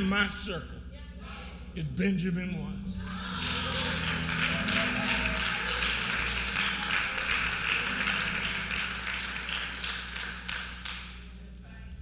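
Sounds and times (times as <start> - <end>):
crowd applauding: 3.0 - 11.4.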